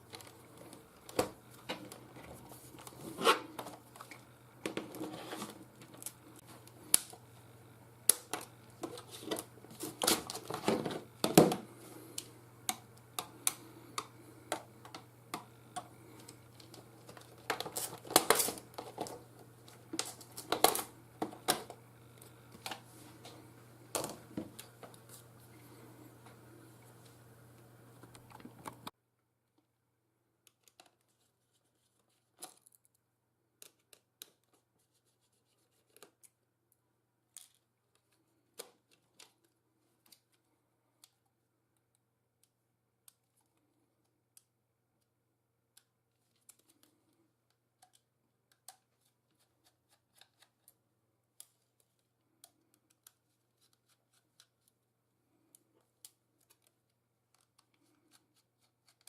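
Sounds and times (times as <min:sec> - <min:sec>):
low steady hum: 0:00.0 - 0:35.4
faint clicks of small parts and tool: 0:12.0 - 0:22.8, 0:30.4 - 0:33.0, 0:33.6 - 0:34.6, 0:37.3 - 0:44.6, 0:45.7 - 0:59.0.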